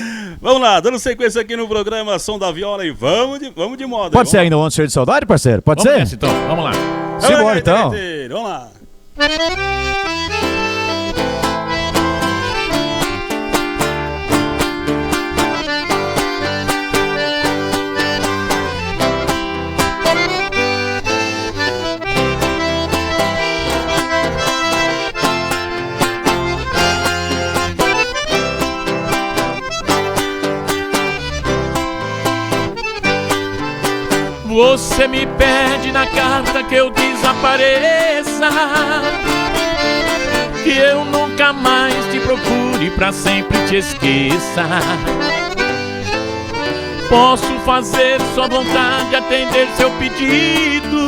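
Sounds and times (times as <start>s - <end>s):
accordion melody: 5.8s - 51.0s
plucked guitar accompaniment: 5.8s - 51.0s.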